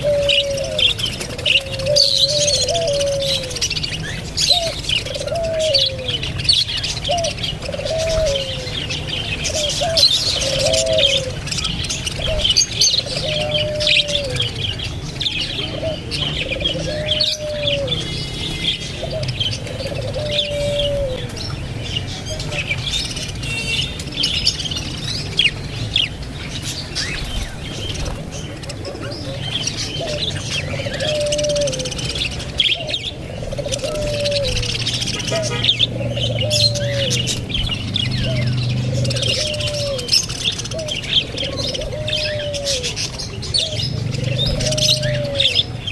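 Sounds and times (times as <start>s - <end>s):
low cooing call: 0.0s - 11.5s, 12.2s - 14.8s, 15.6s - 21.4s, 28.7s - 45.9s
birds chirping: 0.0s - 45.9s.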